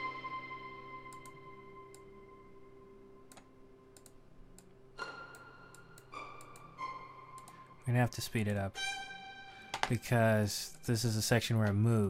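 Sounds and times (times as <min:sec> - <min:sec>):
soft string ensemble notes: 0:00.0 - 0:03.9, 0:04.8 - 0:12.0
sharp clicks: 0:03.3 - 0:04.7.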